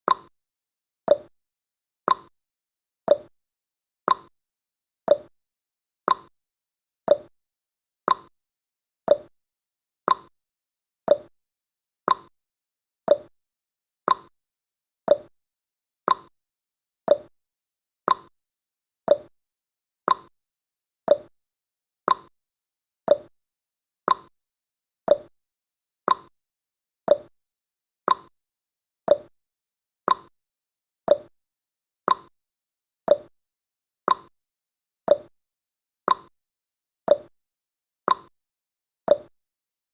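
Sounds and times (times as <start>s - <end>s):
clock ticking: 29.1s - 29.3s, 39.1s - 39.3s.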